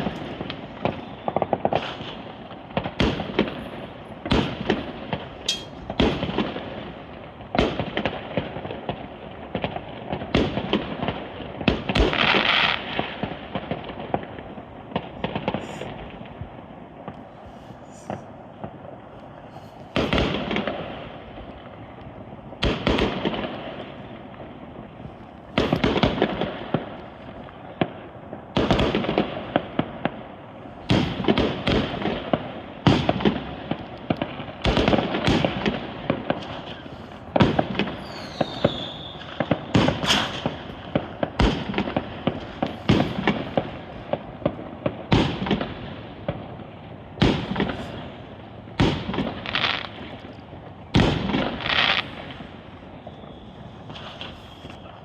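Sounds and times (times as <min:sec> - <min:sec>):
fireworks bursting: 0:00.0 - 0:55.0
fireworks crackling: 0:00.0 - 0:55.0
falling whistle: 0:38.0 - 0:39.3, 0:53.0 - 0:55.0.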